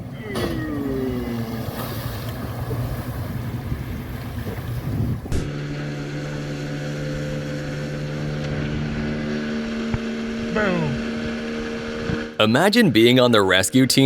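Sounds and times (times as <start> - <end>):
water noise: 0.0 - 10.4
motorboat engine running: 0.0 - 12.7
wind: 0.0 - 14.0.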